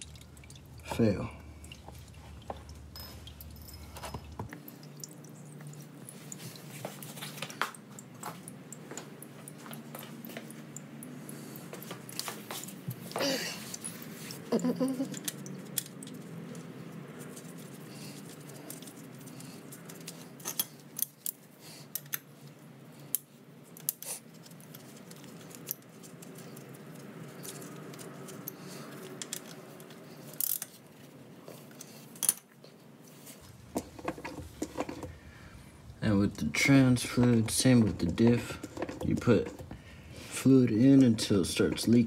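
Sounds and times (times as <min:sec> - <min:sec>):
low hum: 0:00.0 - 0:06.3, 0:33.4 - 0:41.6.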